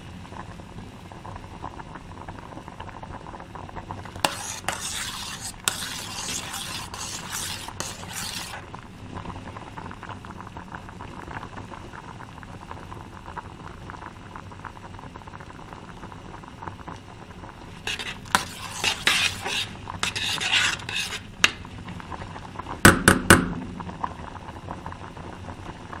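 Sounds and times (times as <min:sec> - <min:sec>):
food sizzling and bubbling: 0:00.0 - 0:26.0
utensil scraping cooking pot: 0:04.0 - 0:08.8, 0:17.7 - 0:22.0
utensil knocking on pot: 0:22.9 - 0:24.0.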